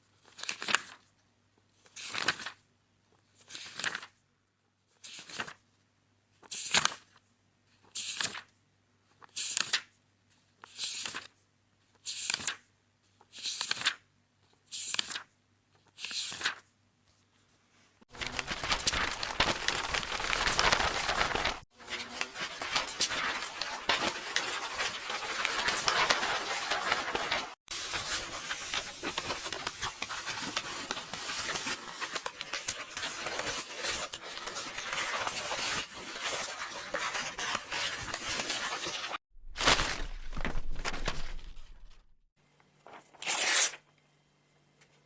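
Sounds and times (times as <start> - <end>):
book pages turning: 0.2 - 1.1, 1.8 - 2.6, 3.3 - 4.2, 5.0 - 5.6, 6.4 - 7.2, 7.8 - 8.5, 9.1 - 9.9, 10.5 - 42.1
paper tearing with crackling: 18.1 - 41.7, 43.1 - 43.8.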